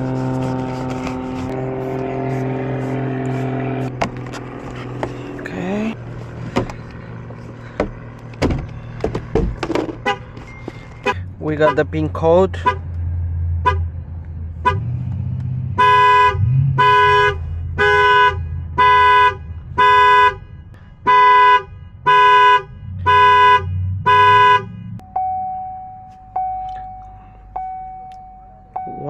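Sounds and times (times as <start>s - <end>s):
car horn blasts: 9.9s - 12.9s, 13.6s - 13.9s, 14.6s - 14.9s, 15.7s - 25.3s
dashboard chime dinging: 25.0s - 29.0s.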